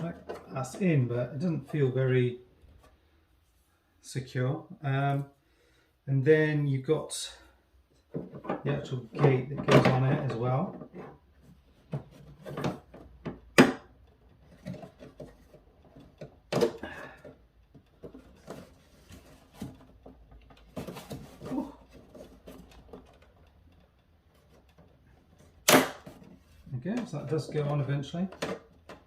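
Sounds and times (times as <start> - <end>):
hard plastic parts clicking: 0.0 - 0.8, 8.0 - 29.0.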